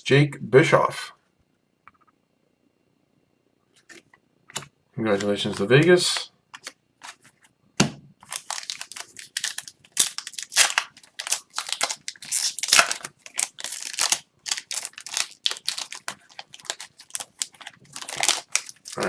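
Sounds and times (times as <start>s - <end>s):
foil wrapper crinkling: 8.2s - 19.0s.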